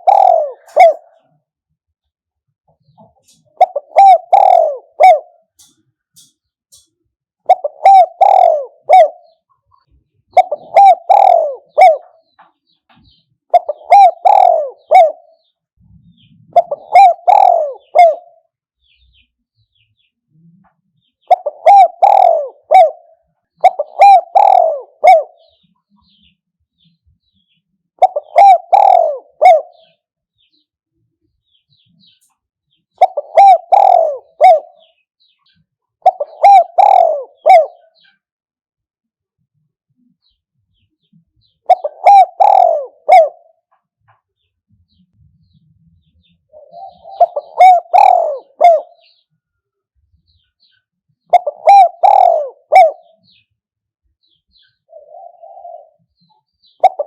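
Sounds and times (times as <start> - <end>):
dove cooing: 0.0 - 1.5, 2.8 - 12.4, 13.0 - 19.1, 20.3 - 26.3, 28.0 - 30.0, 32.9 - 35.4, 36.0 - 38.3, 41.5 - 43.8, 44.9 - 49.3, 50.6 - 53.5, 54.5 - 57.0.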